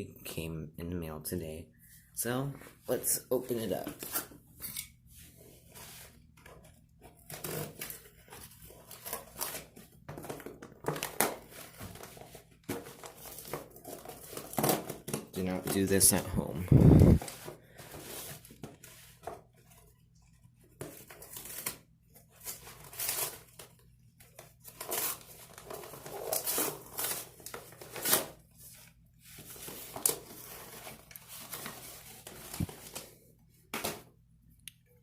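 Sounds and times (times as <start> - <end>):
packaging tearing and crinkling: 21.0 - 23.8, 24.7 - 28.4.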